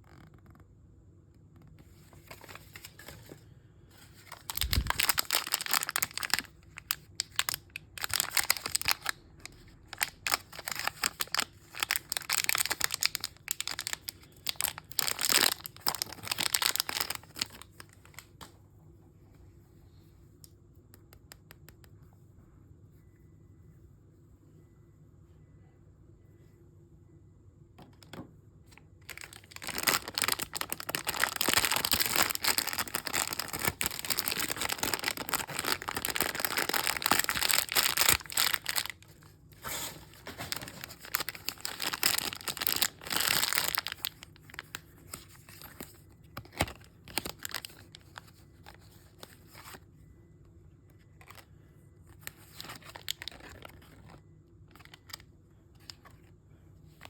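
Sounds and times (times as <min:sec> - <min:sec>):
soft crinkles and small clicks: 0:00.0 - 0:03.4, 0:52.1 - 0:57.0
packaging tearing and rustling: 0:04.1 - 0:18.3, 0:29.0 - 0:49.8, 0:52.2 - 0:55.2.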